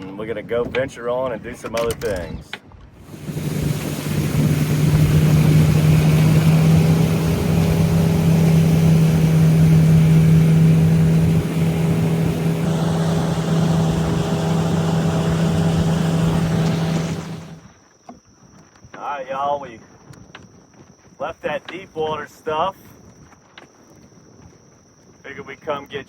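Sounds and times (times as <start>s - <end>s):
rush of wind and water: 0.0s - 26.0s
outboard motor running: 3.0s - 17.7s.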